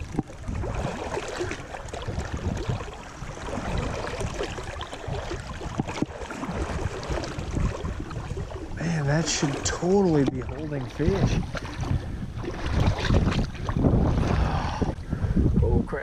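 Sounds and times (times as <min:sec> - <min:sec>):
flowing river water: 0:00.0 - 0:15.4
wind on microphone: 0:00.0 - 0:16.0.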